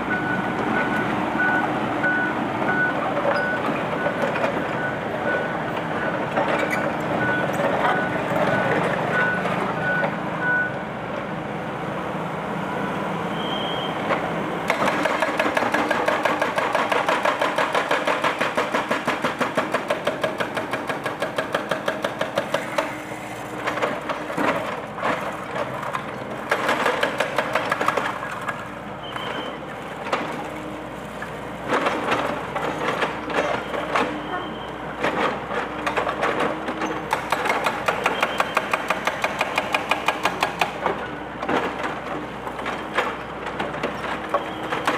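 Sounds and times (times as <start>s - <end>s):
excavator engine running: 0.0s - 44.9s
hydraulic breaker hammering concrete: 14.7s - 28.6s, 35.0s - 44.9s.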